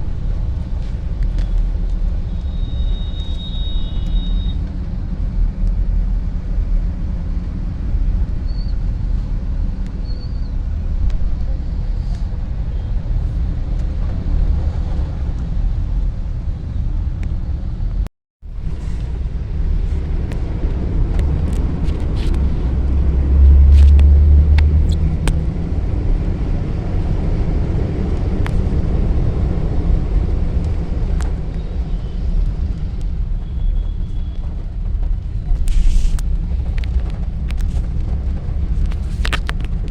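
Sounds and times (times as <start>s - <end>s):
traffic rumble on wet road: 0.0s - 39.9s.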